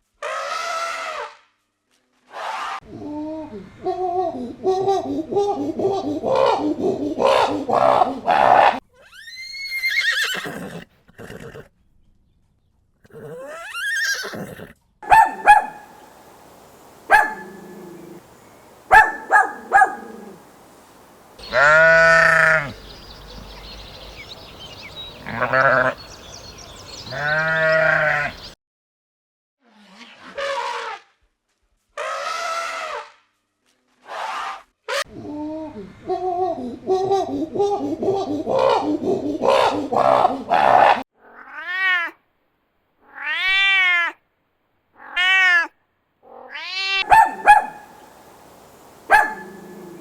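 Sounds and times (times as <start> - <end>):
farm animal calls: 15.0 - 26.2, 27.0 - 28.6, 46.9 - 50.0.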